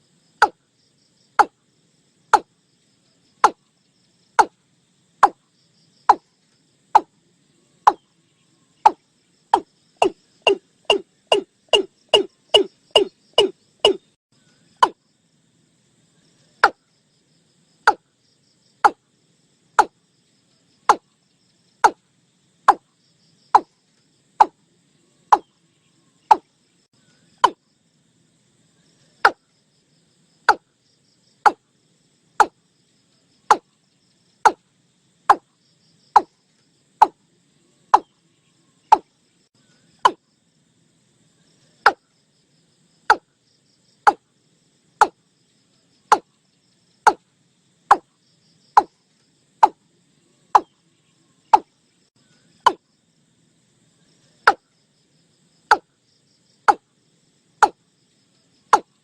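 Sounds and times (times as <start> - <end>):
faint high insect buzz: 0.0 - 59.0
bird calling with knocking notes: 0.4 - 0.6, 1.4 - 1.6, 2.3 - 2.5, 3.4 - 3.7, 4.4 - 4.6, 5.2 - 5.4, 6.0 - 7.2, 7.8 - 8.1, 8.8 - 14.2, 14.8 - 15.0, 16.6 - 16.8, 17.8 - 18.1, 18.8 - 19.0, 19.8 - 20.0, 20.9 - 21.2, 21.8 - 22.0, 22.6 - 22.9, 23.5 - 23.8, 24.4 - 24.6, 25.3 - 25.6, 26.2 - 26.5, 27.3 - 27.6, 29.2 - 29.4, 30.5 - 30.7, 31.4 - 31.6, 32.4 - 32.6, 33.5 - 33.7, 34.4 - 34.6, 35.3 - 35.5, 36.1 - 36.4, 37.0 - 37.2, 37.9 - 38.2, 38.9 - 39.1, 40.0 - 40.2, 41.8 - 42.1, 43.1 - 43.3, 44.0 - 44.3, 45.0 - 45.2, 46.0 - 46.4, 47.0 - 47.2, 47.9 - 48.1, 48.7 - 49.0, 49.6 - 49.8, 50.5 - 50.8, 51.5 - 51.7, 52.6 - 52.9, 54.4 - 54.7, 55.7 - 55.9, 56.6 - 56.9, 57.6 - 57.8, 58.7 - 59.0.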